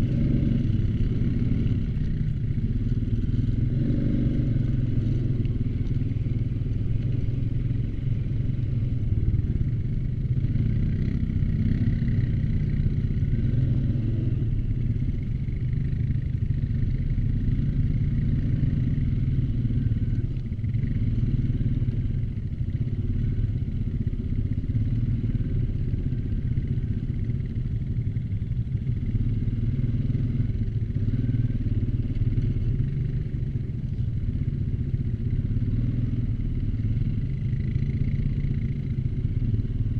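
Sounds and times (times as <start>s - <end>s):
quad bike engine running: 0.0s - 39.9s.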